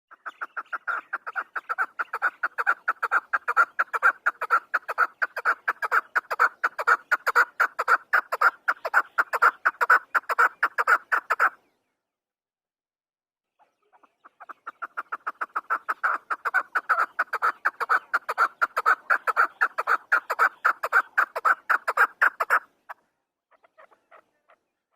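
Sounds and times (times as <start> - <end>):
partridge clucking calls: 0.1 - 11.7, 13.6 - 24.9.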